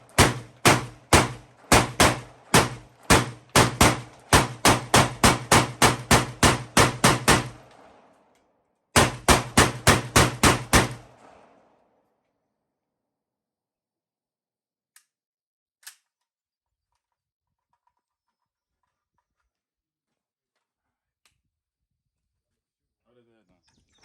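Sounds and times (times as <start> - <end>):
rapid gunshots: 0.0 - 8.0, 9.0 - 11.5.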